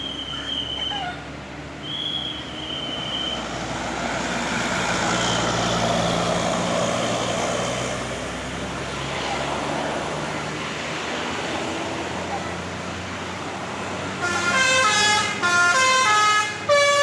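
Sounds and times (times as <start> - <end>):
bus engine and road noise: 0.0 - 17.0
high horn note: 14.2 - 17.0.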